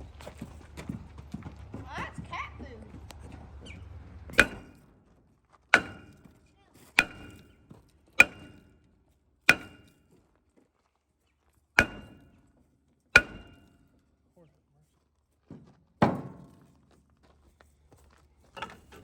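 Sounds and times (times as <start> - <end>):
heavy hammer blows on steel: 4.3 - 4.9, 5.7 - 6.4, 7.0 - 8.8, 9.5 - 10.0, 11.8 - 12.4, 13.2 - 13.8.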